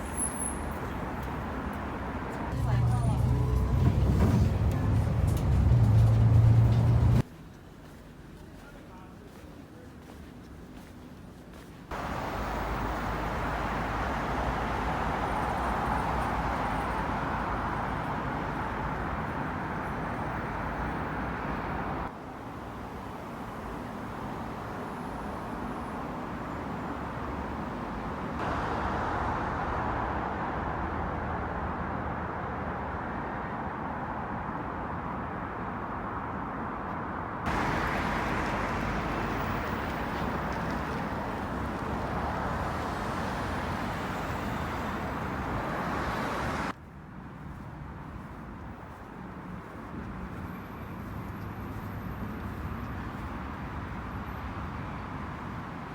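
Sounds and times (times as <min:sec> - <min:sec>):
city road traffic: 0:00.0 - 0:55.9.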